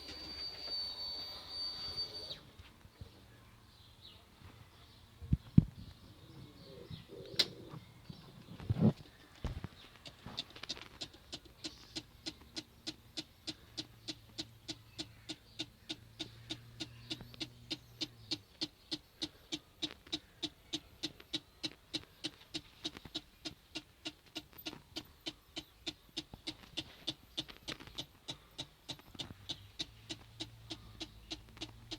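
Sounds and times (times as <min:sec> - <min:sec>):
starter relay clicking rapidly: 0:10.0 - 0:31.9.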